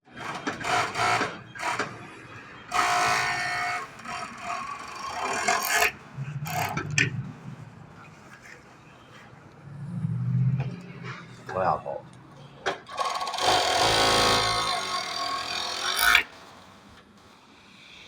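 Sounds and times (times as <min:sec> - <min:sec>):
sewing machine whining: 0:00.1 - 0:06.8, 0:12.8 - 0:17.0.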